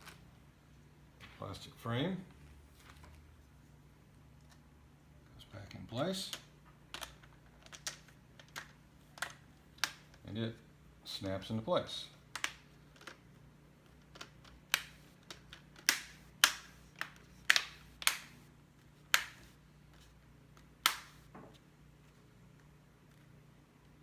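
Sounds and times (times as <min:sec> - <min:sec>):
plastic clips snapping into place: 0:14.1 - 0:18.3, 0:19.1 - 0:19.4, 0:20.6 - 0:21.2.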